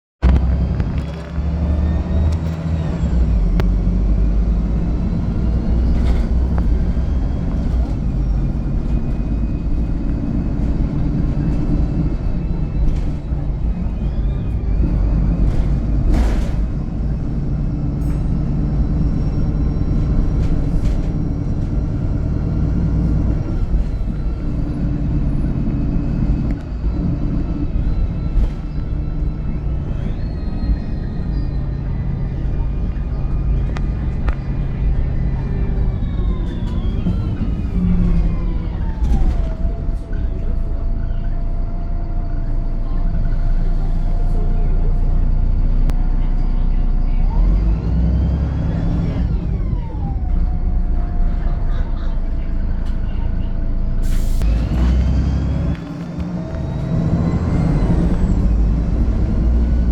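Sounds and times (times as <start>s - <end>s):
bus diesel engine droning: 0.2s - 59.9s.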